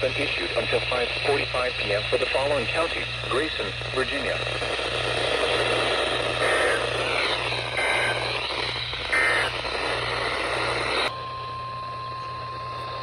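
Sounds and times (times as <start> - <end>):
radio static: 0.0 - 11.1
warbling two-tone data bursts: 5.4 - 11.1.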